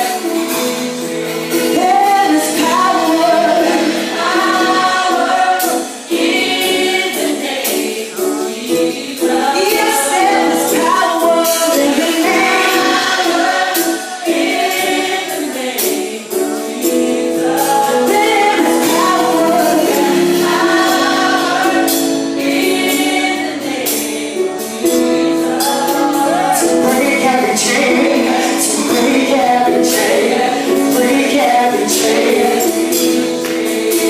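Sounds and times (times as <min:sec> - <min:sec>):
gospel band playing: 0:00.0 - 0:34.0
group of singers: 0:00.0 - 0:34.0
tambourine-like hits: 0:09.6 - 0:34.0.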